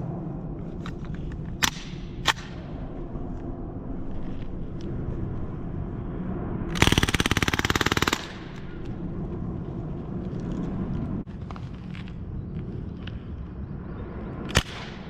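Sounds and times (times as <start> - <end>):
bb rifle automatic burst: 6.8 - 8.5.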